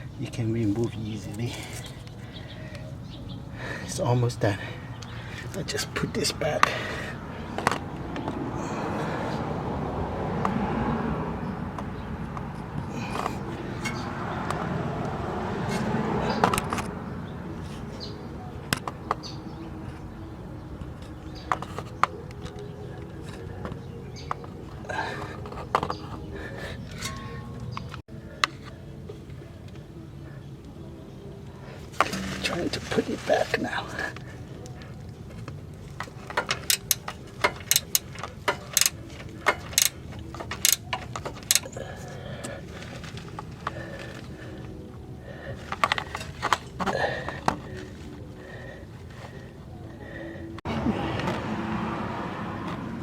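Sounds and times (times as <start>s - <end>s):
tools and metal parts clicking: 12.3s - 14.0s, 20.7s - 28.8s, 31.8s - 44.7s, 45.5s - 48.2s
metallic clicks of hand tools: 36.0s - 41.7s.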